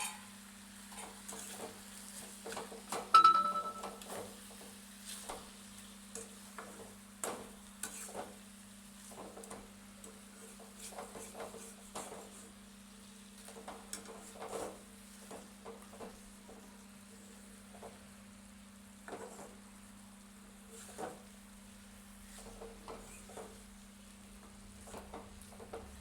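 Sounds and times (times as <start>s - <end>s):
chicken sizzling in a pan: 0.0s - 3.2s, 3.9s - 26.0s
spatula scraping and clicking: 6.1s - 8.4s, 13.4s - 16.2s.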